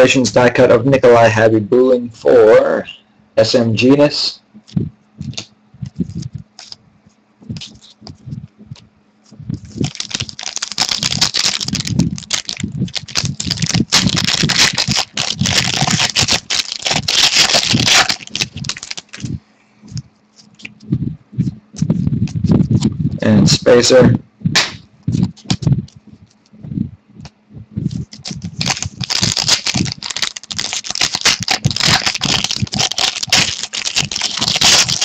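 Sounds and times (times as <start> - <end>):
card pack wrapper crinkling and tearing: 9.6 - 19.3, 28.1 - 35.0.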